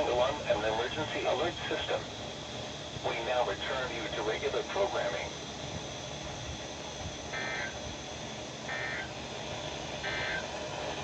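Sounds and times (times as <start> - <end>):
radio static: 0.0 - 2.1.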